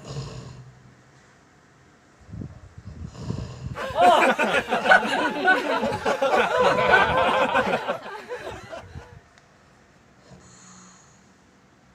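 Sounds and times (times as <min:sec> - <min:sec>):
giggly laughter: 0:03.8 - 0:09.2.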